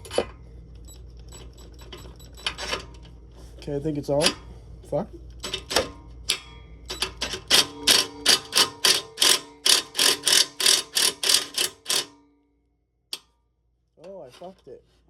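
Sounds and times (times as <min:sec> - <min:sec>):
ratchet clicking: 0:05.4 - 0:12.1.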